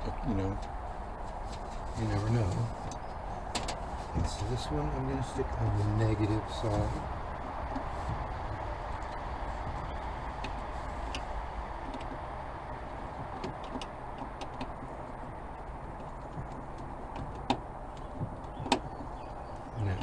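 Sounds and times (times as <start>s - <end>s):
steady background noise: 0.0s - 20.0s
small faint clicks and taps: 9.0s - 12.2s, 13.1s - 19.8s.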